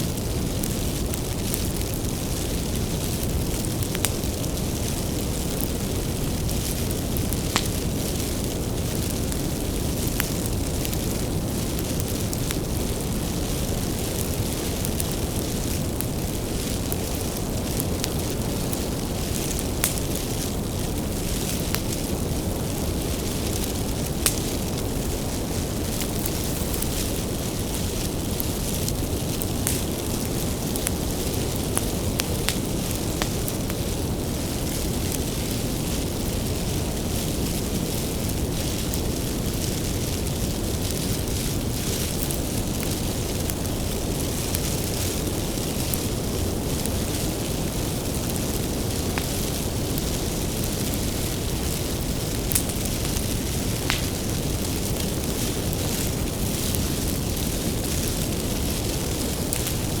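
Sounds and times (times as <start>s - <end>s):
bonfire flame rushing: 0.0s - 60.0s
firewood crackling and popping: 0.0s - 60.0s.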